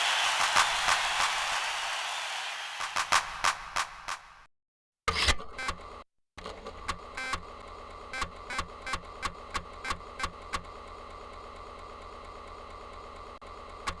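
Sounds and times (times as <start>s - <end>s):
held synth tone: 0.0s - 3.5s
short percussive hits: 0.0s - 4.3s.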